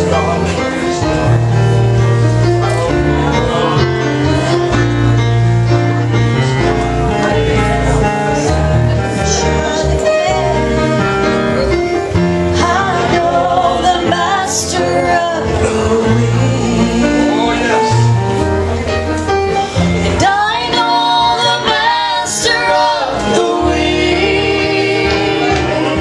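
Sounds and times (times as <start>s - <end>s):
live gospel music: 0.0s - 26.0s
person singing: 12.5s - 18.2s, 20.1s - 26.0s.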